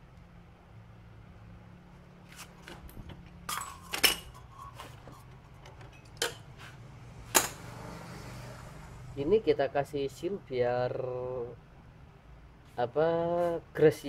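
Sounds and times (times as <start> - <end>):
metal tools clinking: 3.4 - 6.5.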